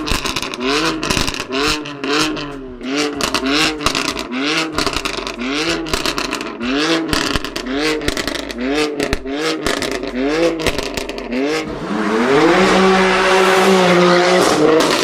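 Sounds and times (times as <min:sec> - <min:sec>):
exhaust pops and crackles: 0:00.0 - 0:11.3, 0:14.3 - 0:15.0
car engine revving: 0:00.0 - 0:15.0.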